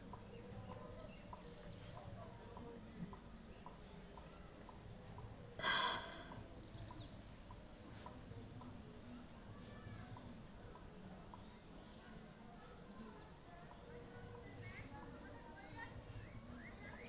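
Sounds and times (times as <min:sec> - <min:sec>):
faint bird chirps: 0:00.0 - 0:17.0
insects trilling: 0:01.1 - 0:12.4.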